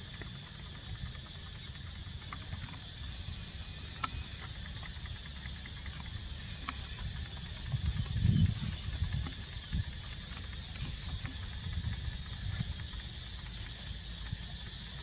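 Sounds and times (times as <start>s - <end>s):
steady low rumble: 0.0s - 15.0s
sharp clicks: 3.9s - 7.1s.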